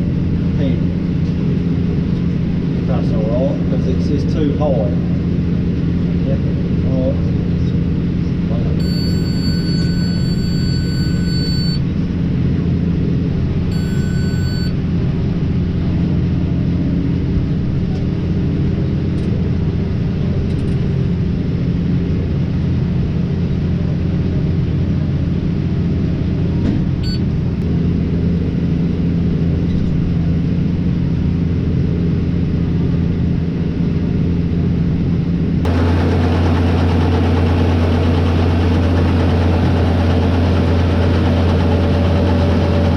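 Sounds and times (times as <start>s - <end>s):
tractor engine running under load: 0.0s - 42.9s
electronic beeps: 8.8s - 11.8s, 13.7s - 14.8s, 27.0s - 27.2s.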